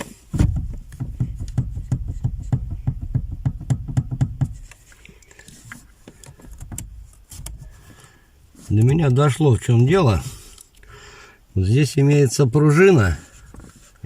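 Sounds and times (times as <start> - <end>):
steering column knocking: 0.4 - 4.8.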